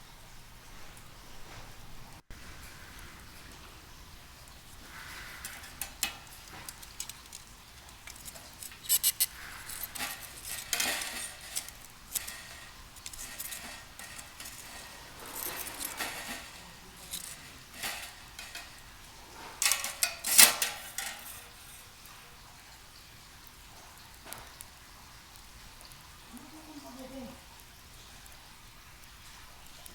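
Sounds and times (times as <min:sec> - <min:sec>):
thin metal parts clinking: 0:05.4 - 0:22.0.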